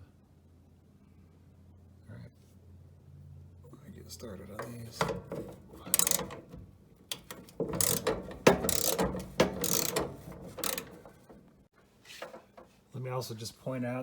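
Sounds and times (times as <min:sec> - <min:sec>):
ratchet wrench clicking: 0:05.0 - 0:11.3.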